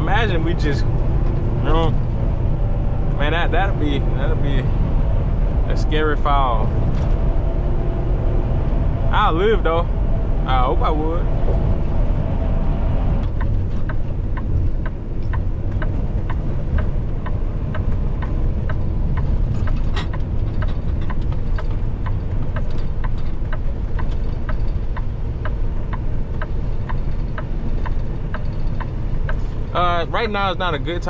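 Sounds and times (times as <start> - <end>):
truck engine and road rumble: 0.0 - 31.0
light ticking: 13.2 - 31.0.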